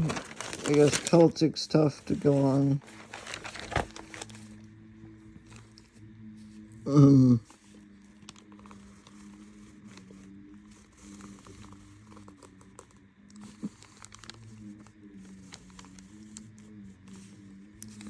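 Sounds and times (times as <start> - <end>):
steady low hum: 0.0 - 18.0
pen scratching on paper: 7.6 - 18.0.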